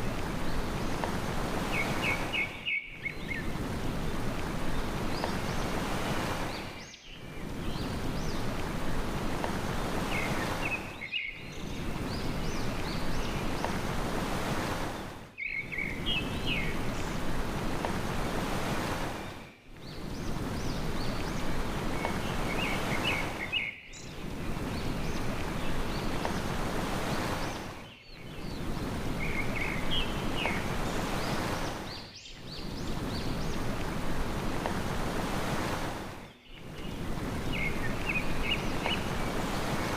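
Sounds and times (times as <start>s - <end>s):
sea waves washing: 0.0s - 39.9s
small birds chirping: 0.0s - 39.9s.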